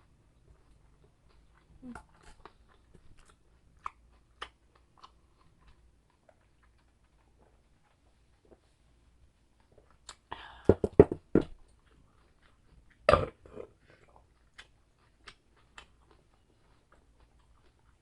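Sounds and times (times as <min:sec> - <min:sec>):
light chewing clicks: 0:00.0 - 0:08.7, 0:13.8 - 0:18.0
mouth sounds while eating: 0:00.6 - 0:08.0, 0:11.8 - 0:18.0.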